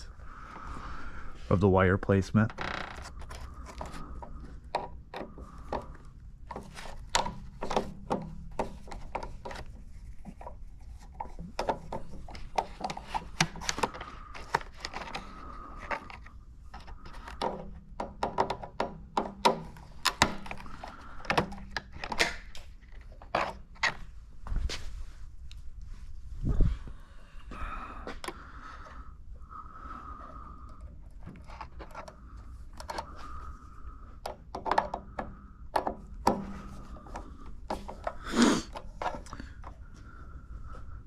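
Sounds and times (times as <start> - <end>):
hands and tools clicking and knocking: 2.4 - 24.0, 30.7 - 33.6, 34.2 - 39.8.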